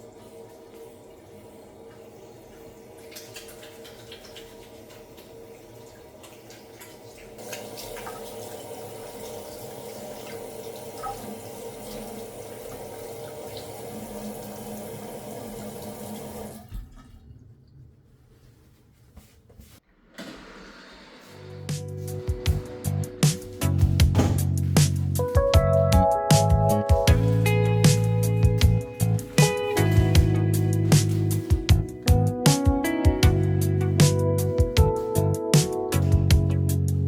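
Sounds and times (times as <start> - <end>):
tap water running into sink: 0.0 - 17.5, 22.2 - 36.8.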